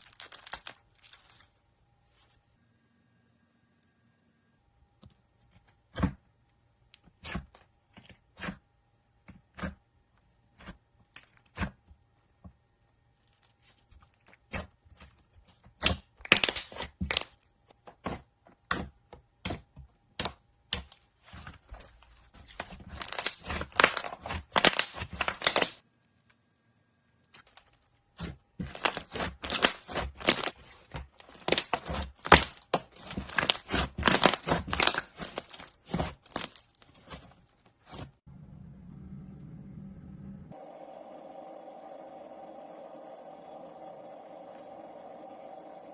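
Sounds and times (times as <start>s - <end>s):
slime crackling and popping: 0.0s - 1.5s, 15.8s - 17.5s, 20.1s - 25.8s, 27.4s - 38.0s.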